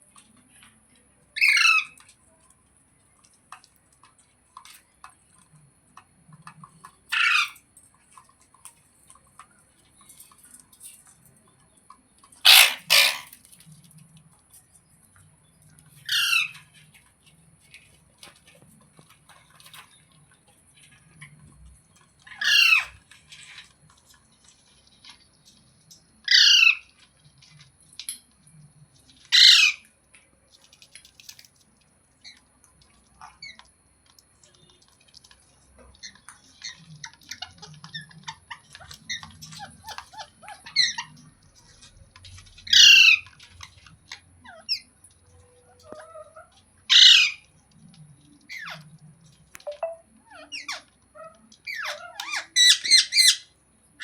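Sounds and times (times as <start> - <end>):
parrot chirps and chatter: 0.0 - 5.6, 6.3 - 54.0
parrot squawking: 1.4 - 2.0, 7.1 - 7.6, 12.4 - 13.4, 16.1 - 16.6, 22.3 - 23.0, 26.3 - 26.8, 29.3 - 29.8, 42.7 - 43.2, 45.9 - 47.4, 51.7 - 53.5.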